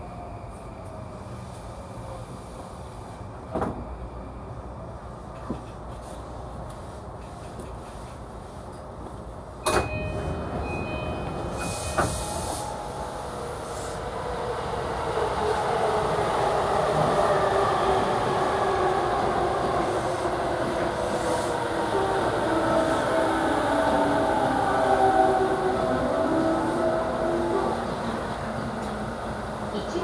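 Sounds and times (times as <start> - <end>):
train door clunk: 3.5 - 4.0, 9.6 - 13.0
train running noise: 5.2 - 30.0.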